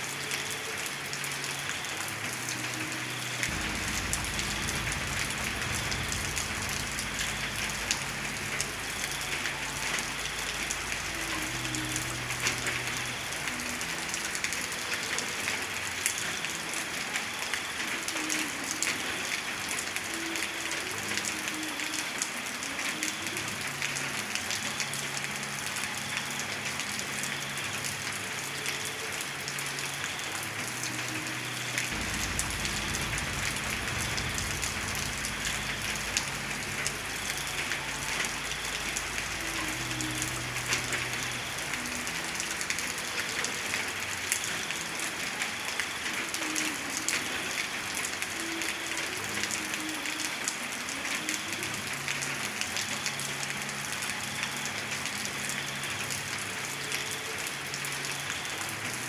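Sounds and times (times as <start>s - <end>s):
raindrops ticking: 0.0s - 59.0s
steady rain falling: 0.0s - 59.0s
low rumble: 3.5s - 9.4s, 32.0s - 39.4s.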